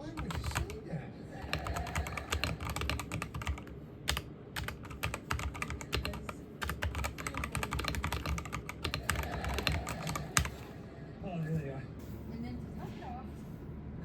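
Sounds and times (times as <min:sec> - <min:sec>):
computer keyboard typing: 0:00.0 - 0:00.8, 0:01.4 - 0:10.7.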